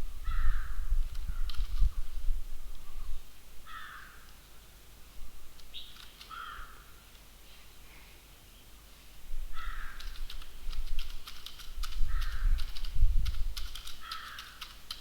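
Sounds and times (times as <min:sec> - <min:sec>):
keyboard typing: 0:10.0 - 0:15.0.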